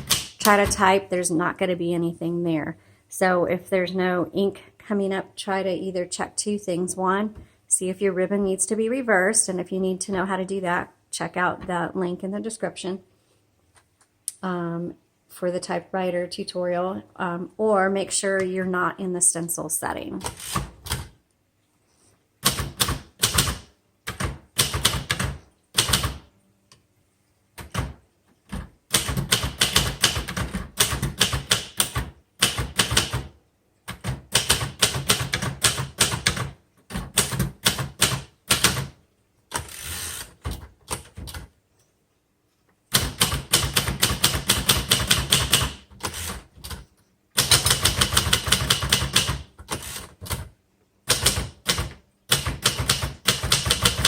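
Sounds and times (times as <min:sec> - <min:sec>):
manual typewriter typing: 0:00.0 - 0:01.0, 0:22.4 - 0:26.3, 0:27.6 - 0:41.5, 0:42.9 - 0:54.0.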